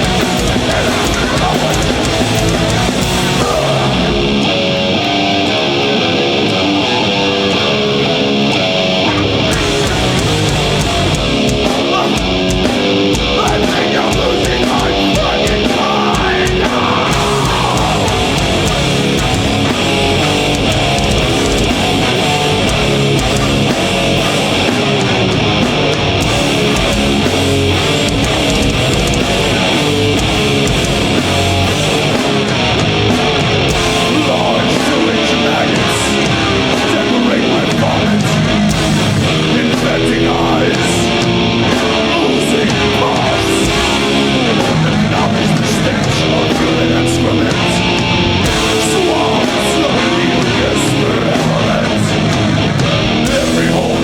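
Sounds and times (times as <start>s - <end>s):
heavy metal band playing: 0.0s - 54.0s.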